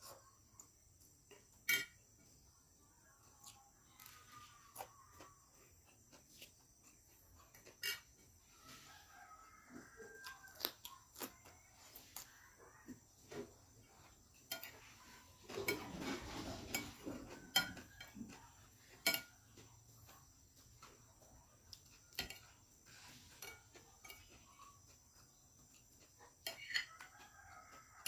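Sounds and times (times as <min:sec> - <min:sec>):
cutlery clinking on a plate: 0:01.3 - 0:02.3, 0:06.4 - 0:08.2, 0:13.3 - 0:20.2, 0:21.8 - 0:28.0.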